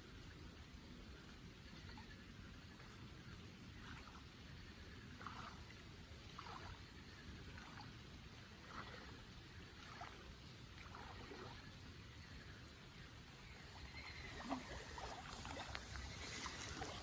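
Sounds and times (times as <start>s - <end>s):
soft water splash: 5.1s - 12.2s, 13.4s - 17.0s.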